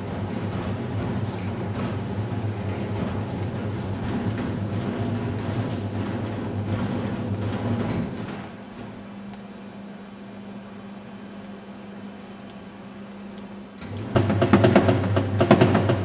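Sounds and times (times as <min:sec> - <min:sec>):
drum knocking: 0:00.0 - 0:07.8, 0:14.1 - 0:16.0
washing machine running: 0:00.0 - 0:09.3, 0:13.8 - 0:16.0.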